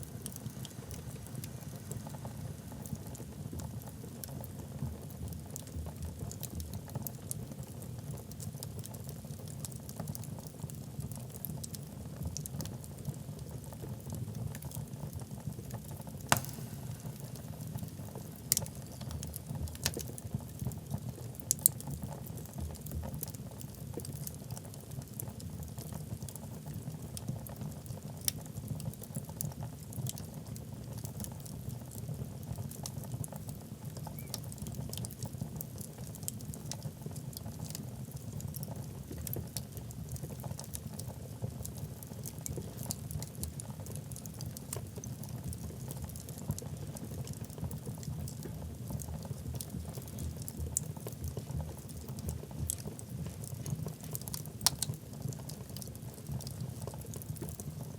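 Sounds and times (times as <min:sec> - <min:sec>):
fire rumbling: 0:00.0 - 0:07.8, 0:14.0 - 0:23.4, 0:33.6 - 0:57.9
fire crackling and popping: 0:00.0 - 0:57.9.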